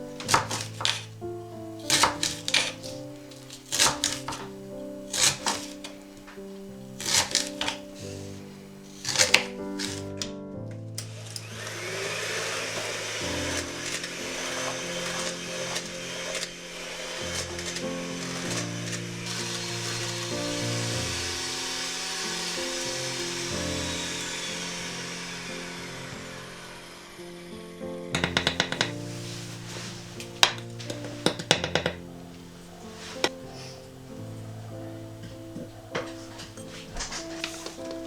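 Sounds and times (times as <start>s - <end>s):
soft music of held chords: 0.0s - 38.0s
kitchen mixer whirring: 5.1s - 10.1s, 11.0s - 27.5s.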